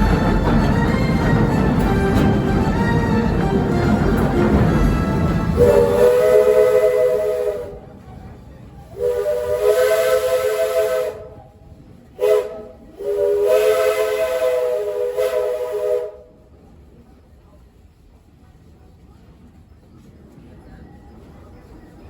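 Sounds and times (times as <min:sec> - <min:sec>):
chime steam whistle blasts: 0:05.5 - 0:07.8.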